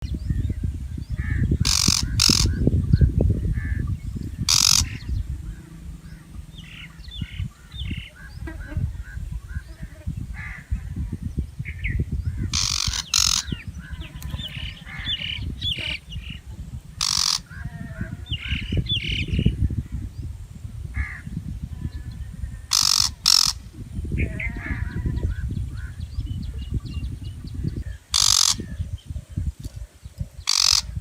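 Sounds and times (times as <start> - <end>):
harsh rasping bird calls: 1.2 - 2.7, 3.4 - 10.8, 12.3 - 16.4, 17.0 - 19.6, 22.5 - 26.7, 27.7 - 28.9, 30.3 - 31.0
low rumble: 2.5 - 9.7.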